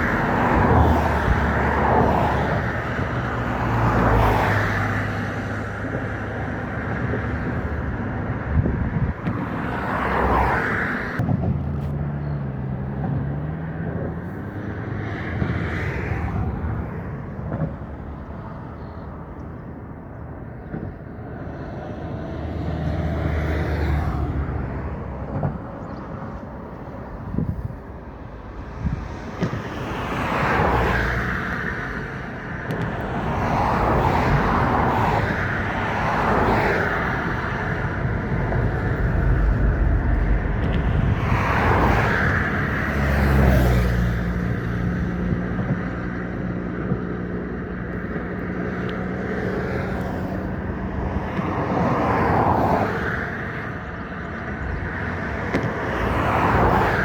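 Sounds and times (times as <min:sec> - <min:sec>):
road vehicles passing: 0:00.0 - 0:57.0
engine humming: 0:36.0 - 0:44.5.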